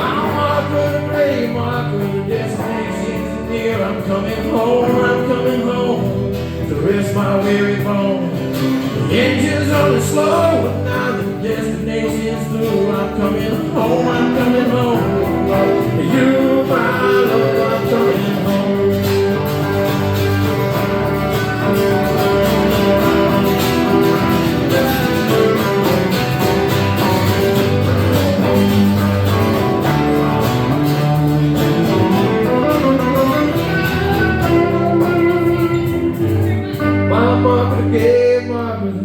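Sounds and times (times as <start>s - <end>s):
country band playing: 0.0s - 39.0s
guitar melody: 0.0s - 39.0s
steady bass: 0.0s - 39.0s.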